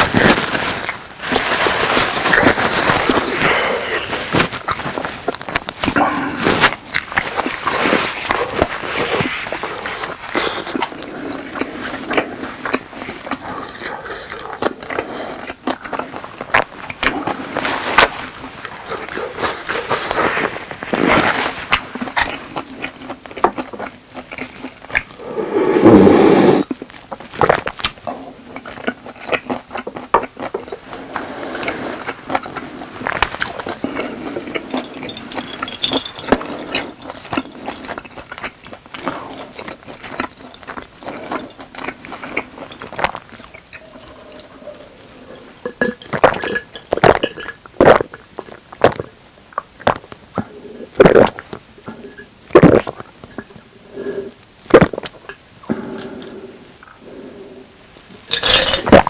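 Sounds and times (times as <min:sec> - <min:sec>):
chewing food: 0:00.0 - 0:26.0, 0:26.6 - 0:53.6.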